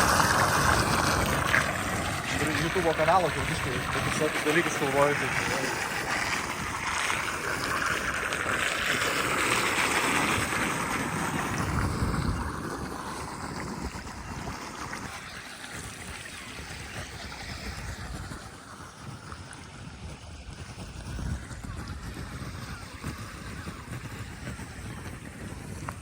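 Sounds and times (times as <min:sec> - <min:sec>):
floodwater rushing: 0:00.0 - 0:19.8
wind buffeting microphone: 0:00.0 - 0:26.0.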